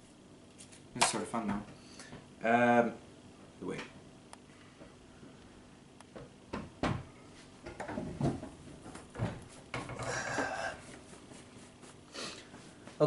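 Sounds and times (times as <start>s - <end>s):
kitchen knocks and thuds: 6.5s - 10.0s.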